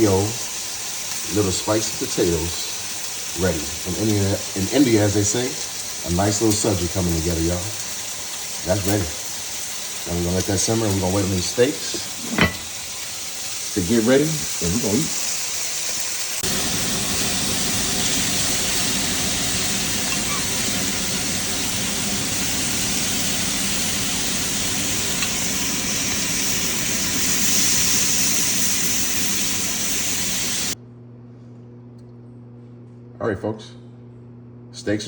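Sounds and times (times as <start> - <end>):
steaks sizzling in a pan: 0.0 - 30.8.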